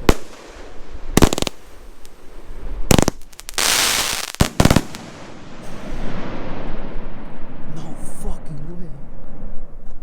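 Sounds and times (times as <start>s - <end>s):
firework hissing crackle: 0.0s - 7.0s
firework bangs: 0.0s - 7.9s.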